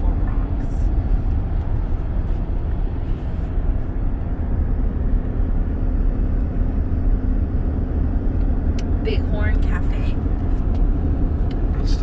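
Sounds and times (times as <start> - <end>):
car road and engine rumble: 0.0 - 12.0.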